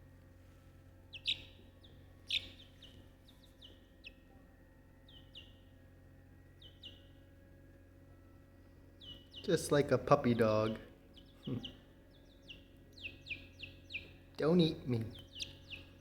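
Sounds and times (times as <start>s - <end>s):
faint steady hum: 0.0s - 16.0s
small bird chirping: 1.0s - 7.5s, 8.8s - 16.0s.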